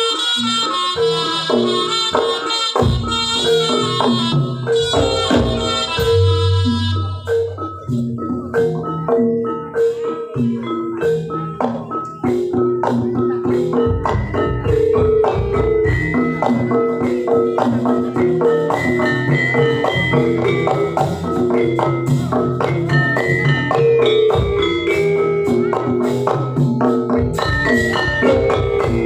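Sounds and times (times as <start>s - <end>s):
gamelan metal percussion melody: 0.0s - 29.0s.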